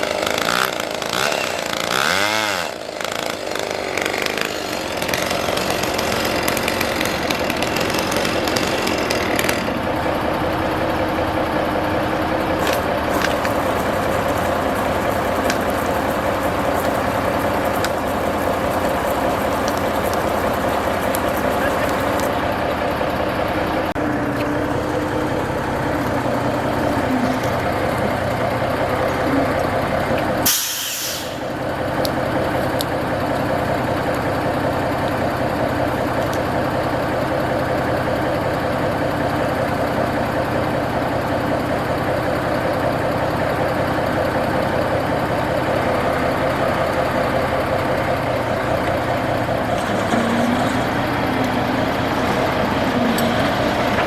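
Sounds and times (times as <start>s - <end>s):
truck engine running: 0.0s - 54.0s
air hiss: 30.4s - 31.5s.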